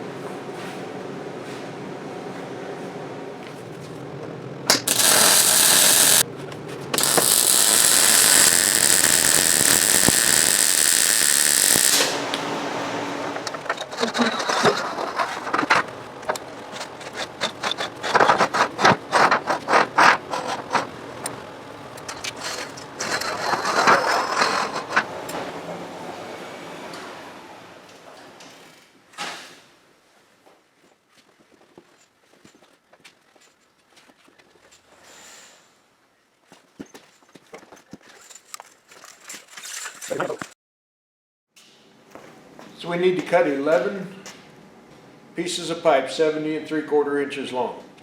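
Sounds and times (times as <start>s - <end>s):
welding arc hiss and crackle: 4.7s - 6.3s, 7.0s - 12.5s
metallic clicks scrapes and knocks: 13.3s - 21.3s, 22.0s - 25.4s.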